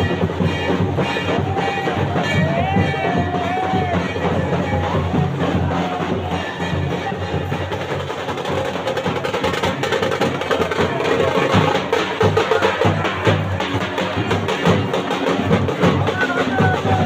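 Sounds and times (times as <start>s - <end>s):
shehnai playing: 0.0s - 7.5s
drums beating fast rhythm: 0.0s - 17.0s.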